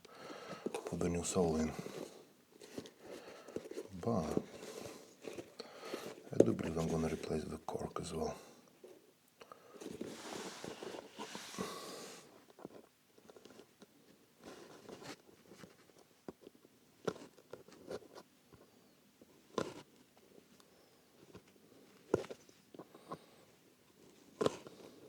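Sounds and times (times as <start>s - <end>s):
scraping on leather: 9.9s - 12.8s.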